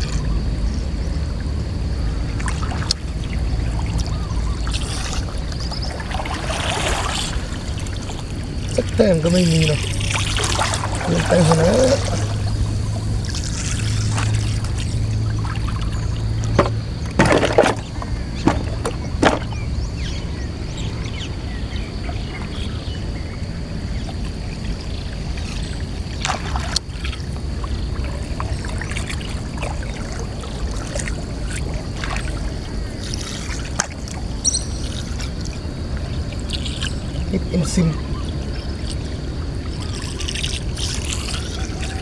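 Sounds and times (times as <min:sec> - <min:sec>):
water trickling and splashing: 0:01.4 - 0:20.5, 0:22.2 - 0:42.0
sharp splashes or knocks: 0:16.4 - 0:19.7.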